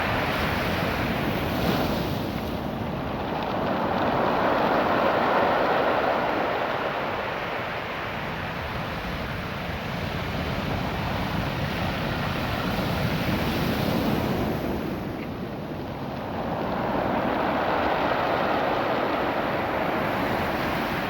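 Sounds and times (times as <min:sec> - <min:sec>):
surf washing over cobbles: 0:14.1 - 0:21.0.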